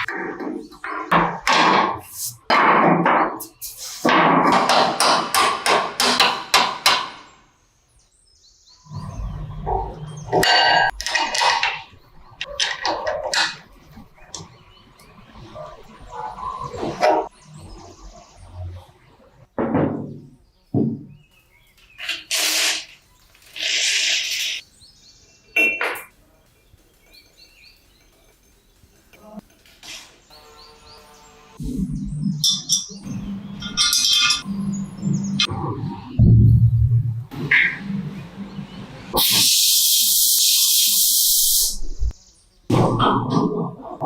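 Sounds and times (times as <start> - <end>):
hammer strikes: 1.1 - 7.3
ringing metallic clang: 25.6 - 26.1, 32.4 - 34.5
metal tools clinking: 33.6 - 34.5
low rumble: 34.5 - 39.1
short hissing bursts: 39.2 - 42.0.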